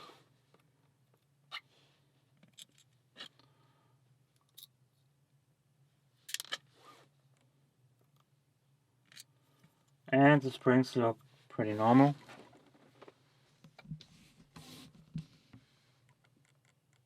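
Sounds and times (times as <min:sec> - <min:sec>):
low steady hum: 0:00.0 - 0:17.0
small metal parts clicking: 0:04.4 - 0:04.7, 0:06.3 - 0:06.6.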